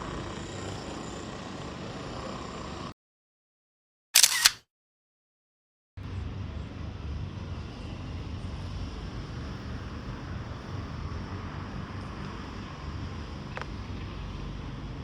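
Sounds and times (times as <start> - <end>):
steady low rumble: 6.0 - 15.0.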